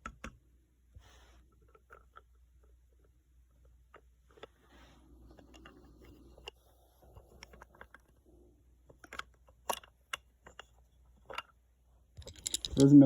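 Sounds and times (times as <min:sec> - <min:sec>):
wooden toy handling clicks and taps: 0:00.0 - 0:00.4, 0:05.3 - 0:08.2, 0:08.8 - 0:13.0.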